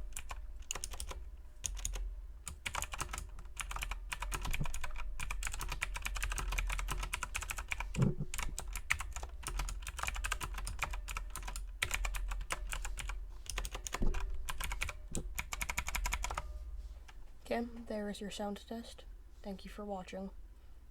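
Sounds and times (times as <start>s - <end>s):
mechanical keyboard typing: 0.0s - 16.4s
deeper thump: 14.0s - 14.4s.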